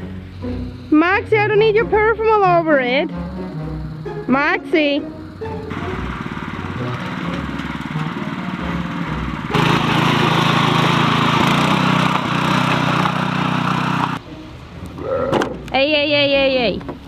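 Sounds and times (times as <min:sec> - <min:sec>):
riding lawn mower engine: 0:03.2 - 0:14.3.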